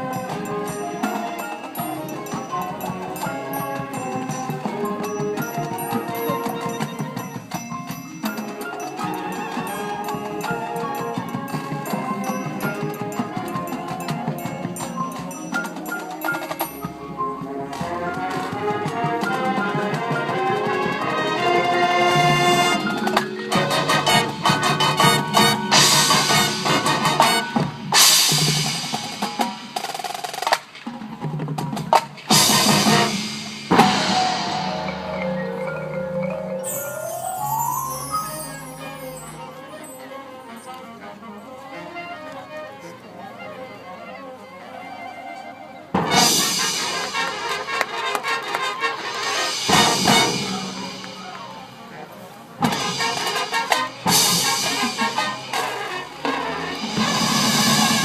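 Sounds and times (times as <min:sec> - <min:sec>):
marching band playing: 0:00.0 - 0:44.4, 0:45.8 - 0:58.0
loud accented percussion hits: 0:21.4 - 0:39.6, 0:46.0 - 0:51.9, 0:52.6 - 0:58.0.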